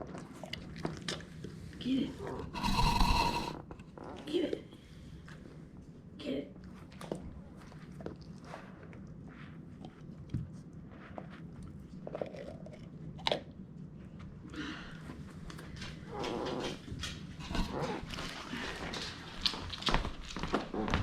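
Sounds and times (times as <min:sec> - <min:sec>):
dog chewing crunchy toy: 0:02.2 - 0:03.8, 0:06.8 - 0:14.2.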